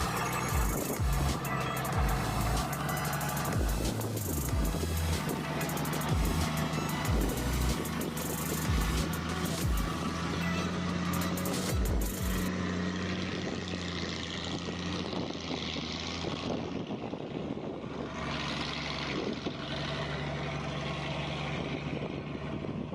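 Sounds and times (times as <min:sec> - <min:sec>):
engine droning: 0:00.0 - 0:22.9
low thumps: 0:03.4 - 0:07.8.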